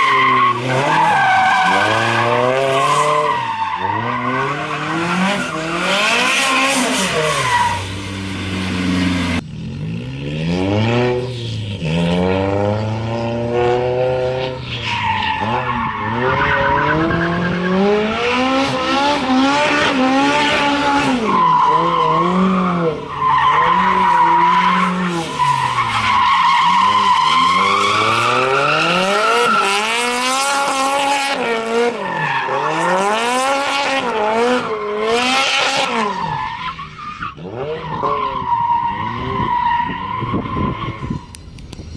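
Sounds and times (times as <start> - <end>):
car engine revving: 0.0 - 41.4.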